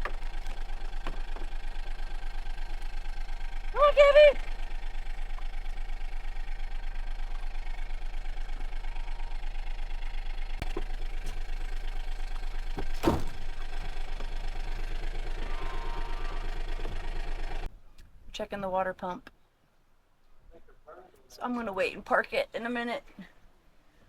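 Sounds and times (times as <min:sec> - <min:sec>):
engine idling: 0:00.0 - 0:17.7
loud clunk: 0:12.5 - 0:14.4.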